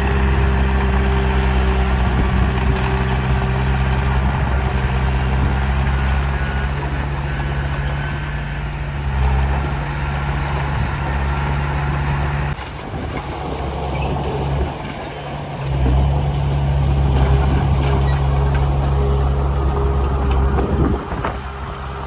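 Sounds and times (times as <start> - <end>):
heavy diesel engine running: 0.0 - 22.0.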